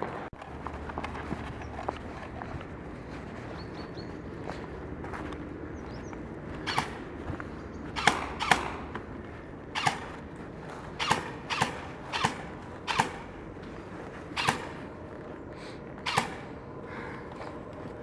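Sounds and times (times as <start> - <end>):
footsteps on gritty floor: 0.0 - 11.0.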